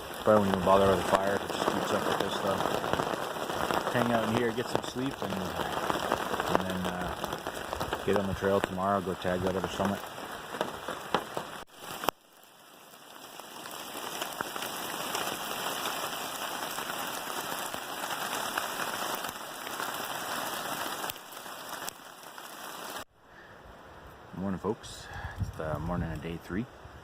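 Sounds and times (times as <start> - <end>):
rain drops ticking: 0.0 - 23.1
rain hissing: 0.0 - 23.5.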